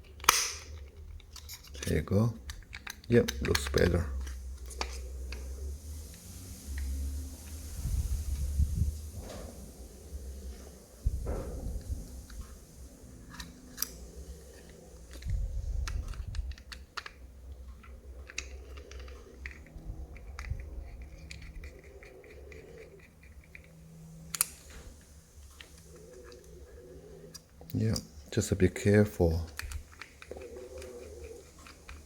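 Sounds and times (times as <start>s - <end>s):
plastic wall switch clicks: 0.2s - 0.7s.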